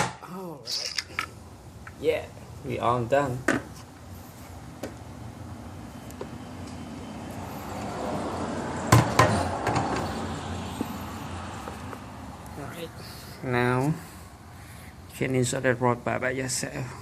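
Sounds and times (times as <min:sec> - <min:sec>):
sharp knocks: 0:00.0 - 0:00.2, 0:08.9 - 0:10.0
passing vehicle road noise: 0:03.7 - 0:15.2.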